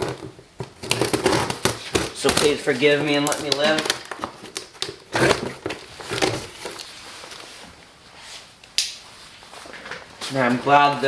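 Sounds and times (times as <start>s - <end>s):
cardboard scraping and crinkling: 0.0s - 8.5s.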